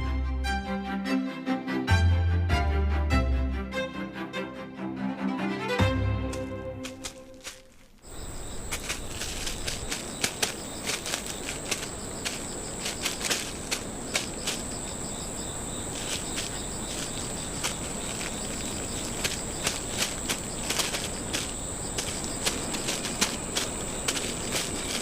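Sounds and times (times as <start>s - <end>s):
sharp ticks and rustles: 6.3s - 25.0s
background hiss: 6.4s - 25.0s
high-pitched insect trill: 8.0s - 25.0s.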